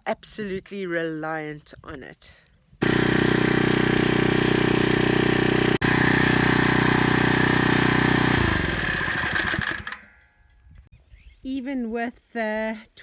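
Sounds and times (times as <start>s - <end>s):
small engine running: 2.8s - 10.1s.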